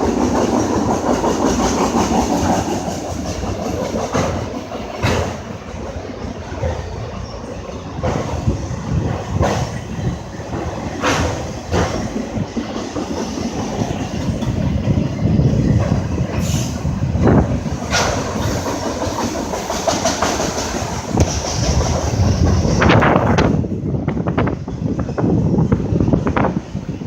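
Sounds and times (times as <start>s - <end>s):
wheels clacking over rail joints: 0.0s - 23.6s
train rumbling past: 0.0s - 27.0s.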